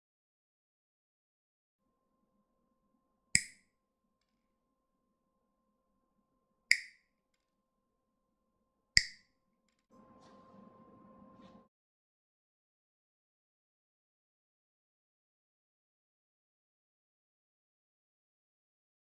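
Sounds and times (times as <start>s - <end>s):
sharp clicks: 3.4s - 3.6s, 6.7s - 7.0s, 9.0s - 9.2s.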